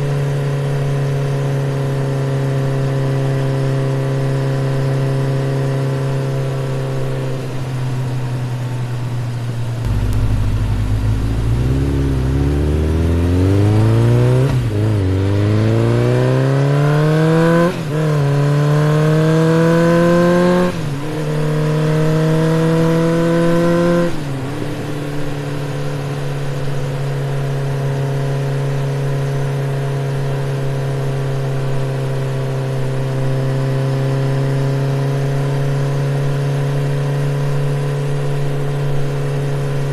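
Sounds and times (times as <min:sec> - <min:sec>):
motorcycle engine accelerating: 0:09.7 - 0:28.6.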